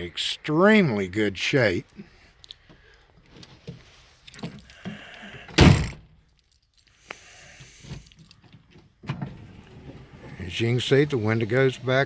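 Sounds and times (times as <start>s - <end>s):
heavy thunk: 5.5s - 6.1s.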